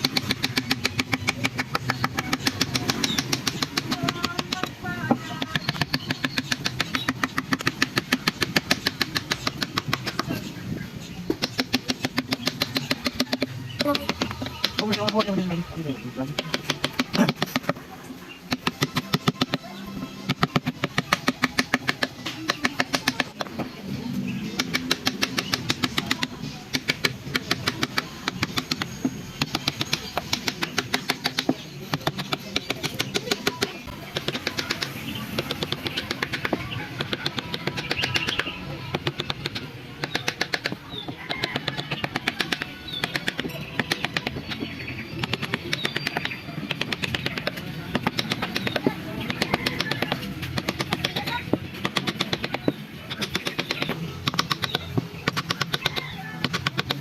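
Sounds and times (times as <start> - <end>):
faint background music: 0.0 - 57.0
mallet striking chisel into wood: 24.6 - 57.0.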